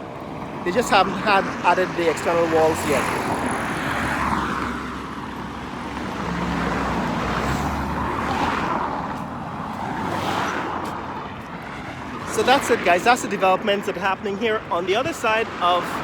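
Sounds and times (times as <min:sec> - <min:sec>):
low traffic rumble: 0:00.0 - 0:16.0
vehicles passing: 0:00.0 - 0:16.0.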